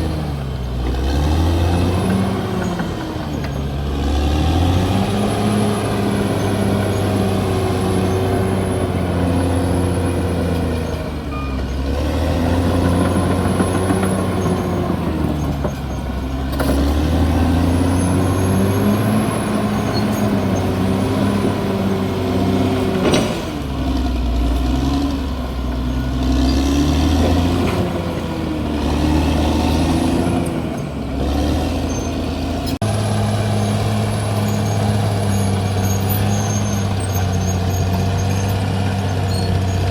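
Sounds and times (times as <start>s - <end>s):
bulldozer diesel engine working: 0.0s - 39.9s.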